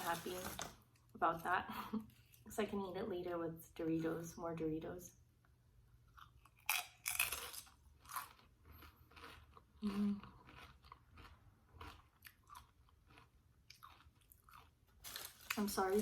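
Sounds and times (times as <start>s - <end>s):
crunching chips: 0.0s - 0.8s, 6.2s - 16.0s
soft chewing: 6.0s - 15.6s.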